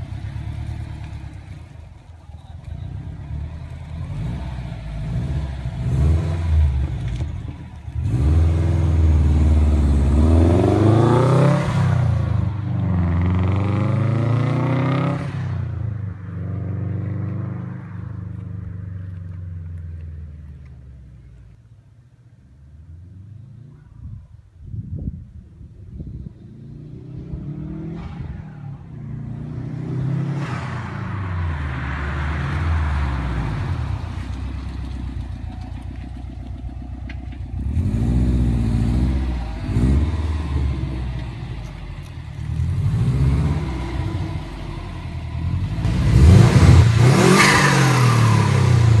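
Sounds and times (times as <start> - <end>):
car engine revving: 2.8 - 15.6, 26.4 - 49.0.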